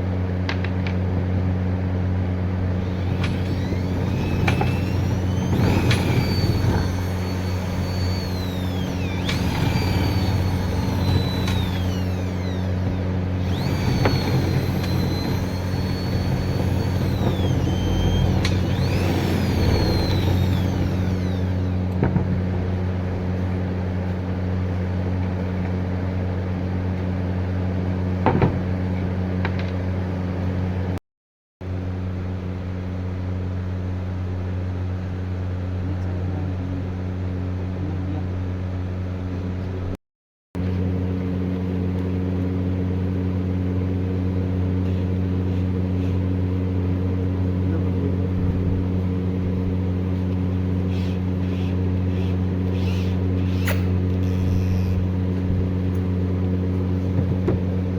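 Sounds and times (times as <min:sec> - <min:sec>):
woodworking machine whining: 0:02.6 - 0:22.2, 0:50.2 - 0:56.0.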